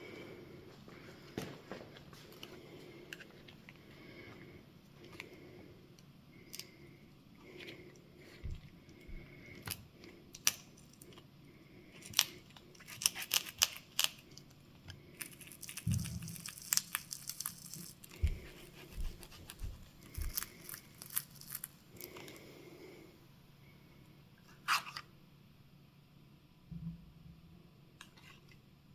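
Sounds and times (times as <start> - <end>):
adhesive tearing: 15.2 - 22.4.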